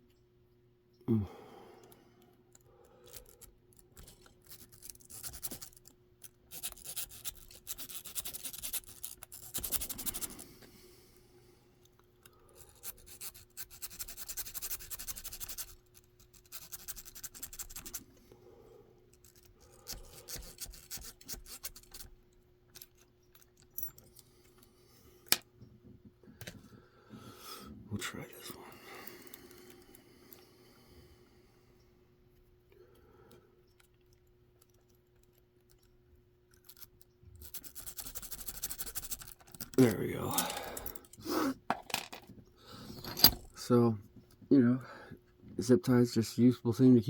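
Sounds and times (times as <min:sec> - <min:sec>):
zip tie scraping lock pins: 0:02.4 - 0:10.6, 0:11.8 - 0:18.0, 0:19.1 - 0:25.4, 0:33.6 - 0:41.5, 0:42.8 - 0:43.6.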